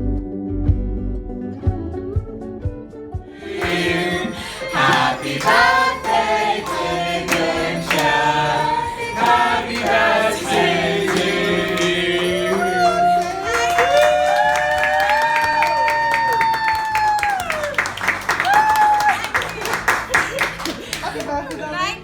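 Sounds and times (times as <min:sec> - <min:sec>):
person singing: 0:03.4 - 0:14.0.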